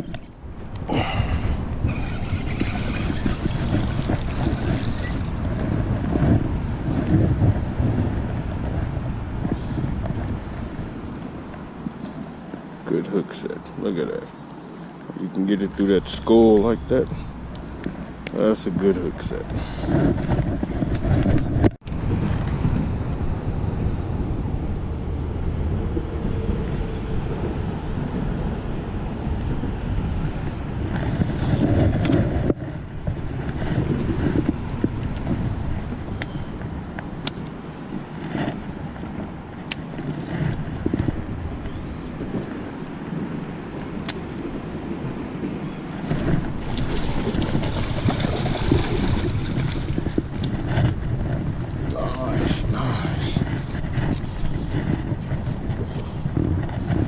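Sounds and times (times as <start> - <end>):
wind buffeting microphone: 0.0 - 57.0
water splashing: 46.0 - 50.7.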